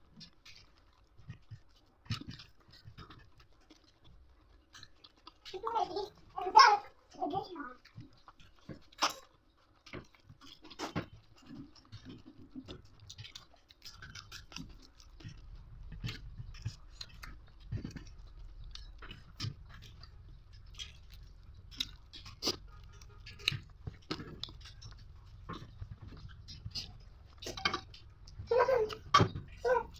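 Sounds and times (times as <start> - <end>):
person chewing crunchy food: 0.0 - 29.9
low steady hum: 12.2 - 29.9.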